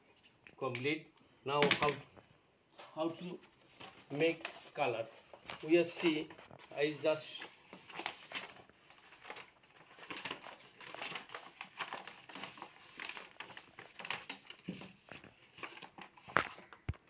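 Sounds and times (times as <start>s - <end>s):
soft rustling: 1.2s - 16.9s.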